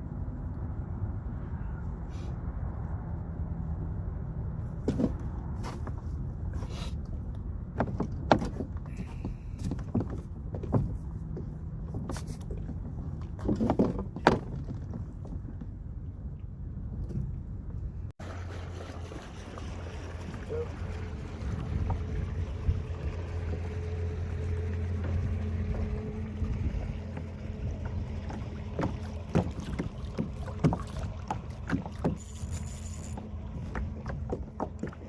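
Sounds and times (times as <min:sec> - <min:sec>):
wind rumbling on microphone: 0:19.0 - 0:35.0.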